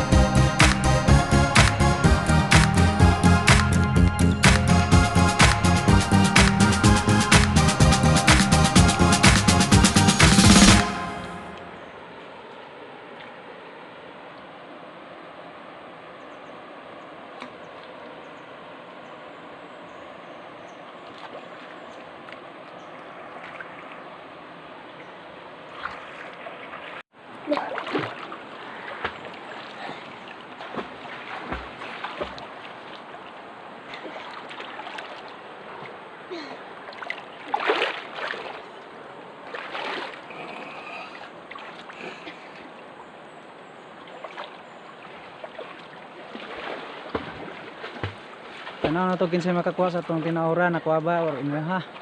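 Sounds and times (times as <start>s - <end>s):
river water rushing: 8.4s - 52.0s
water splashes: 20.5s - 52.0s.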